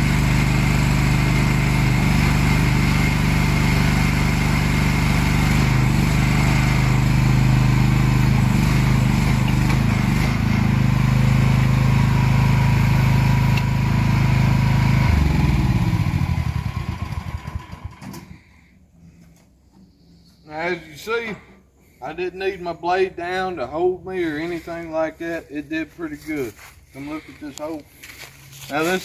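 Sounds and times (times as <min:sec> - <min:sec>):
single-cylinder engine running: 0:00.0 - 0:18.4.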